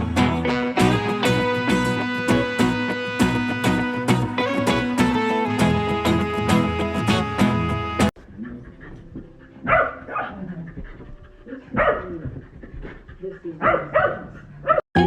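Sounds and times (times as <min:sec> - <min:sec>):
dog vocalizing: 0:08.3 - 0:14.8.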